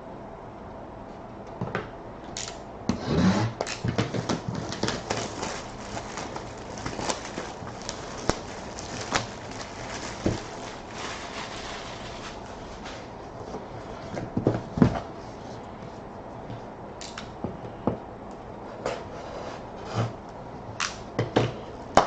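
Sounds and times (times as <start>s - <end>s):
plastic wrap and cardboard tearing: 3.1s - 13.1s.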